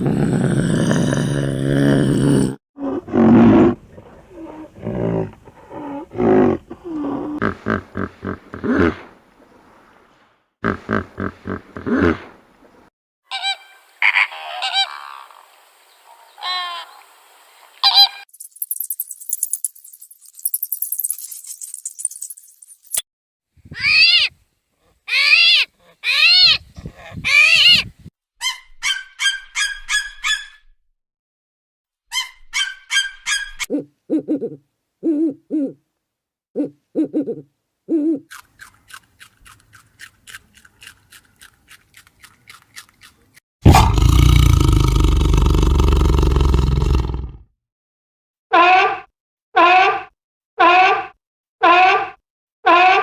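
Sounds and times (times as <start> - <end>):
rising and falling animal calls: 23.7 - 24.3, 25.1 - 27.9.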